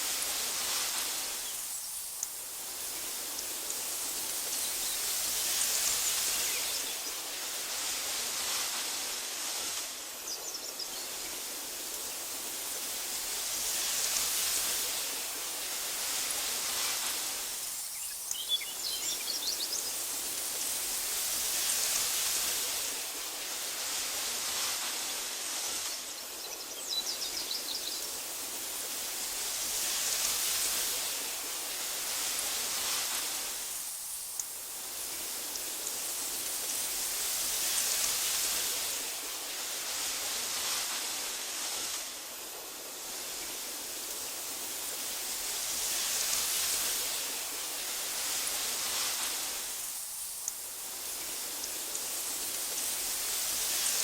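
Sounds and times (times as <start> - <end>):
wind rustling grass: 0.0 - 54.0
faint bird chirps: 17.8 - 20.1.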